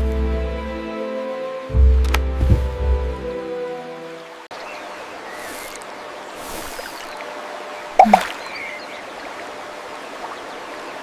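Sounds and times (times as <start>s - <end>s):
trickling stream: 3.3s - 11.0s
sharp water plop: 8.0s - 8.4s.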